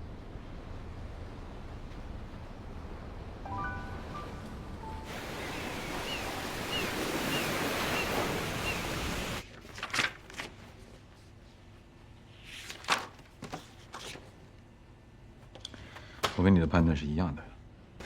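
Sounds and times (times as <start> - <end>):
sea waves: 0.0 - 9.4
wind: 0.0 - 18.0.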